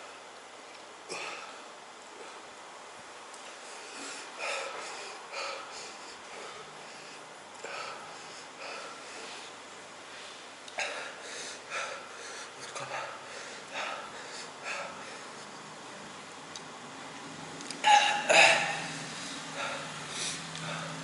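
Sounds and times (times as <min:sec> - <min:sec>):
hissing breaths and sniffs: 0:18.6 - 0:21.0.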